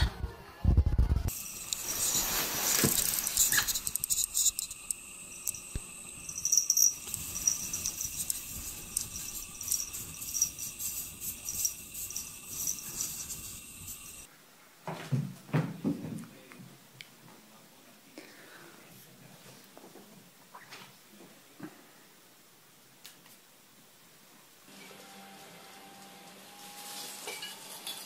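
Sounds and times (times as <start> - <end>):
insects trilling: 1.3 - 14.3.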